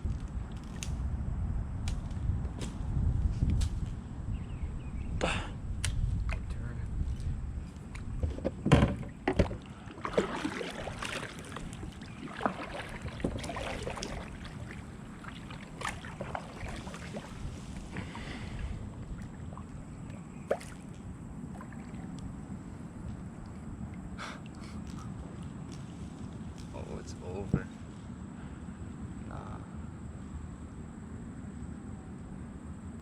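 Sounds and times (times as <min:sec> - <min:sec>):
low wind rumble: 0:00.0 - 0:33.0
water sounds: 0:06.1 - 0:27.6
paddle knocking against kayak hull: 0:07.9 - 0:17.4.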